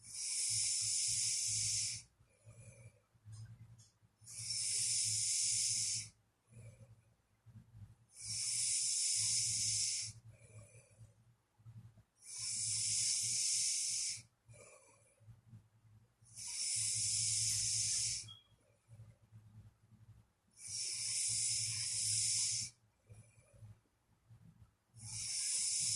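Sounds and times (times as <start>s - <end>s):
person snoring: 0.0s - 2.0s, 4.3s - 6.1s, 8.2s - 10.2s, 12.2s - 14.2s, 16.4s - 18.3s, 20.6s - 22.7s, 25.0s - 25.9s.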